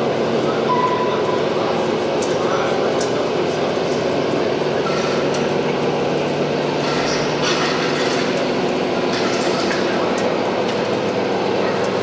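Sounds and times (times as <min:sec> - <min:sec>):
exhibition hall crowd din: 0:00.0 - 0:12.0.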